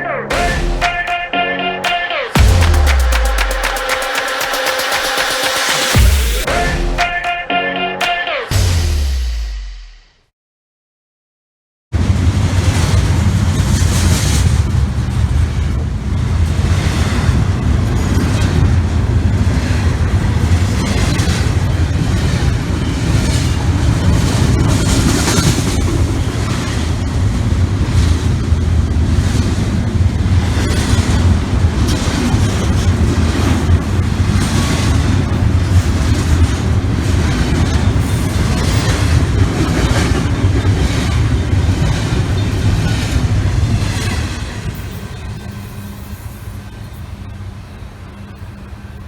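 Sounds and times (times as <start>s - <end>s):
train rumbling past: 12.0s - 49.0s.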